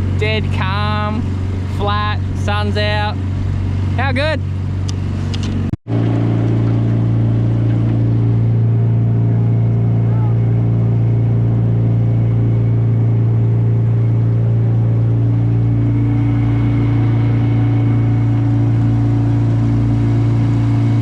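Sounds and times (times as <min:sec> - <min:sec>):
outboard motor droning: 0:00.0 - 0:21.0
higher steady tone: 0:05.9 - 0:21.0.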